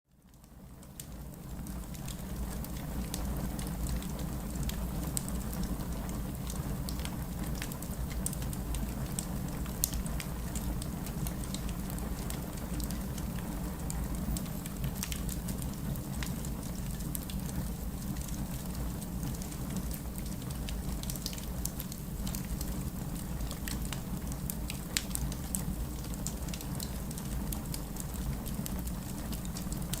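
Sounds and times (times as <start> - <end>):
wood fire crackling: 0.2 - 30.0.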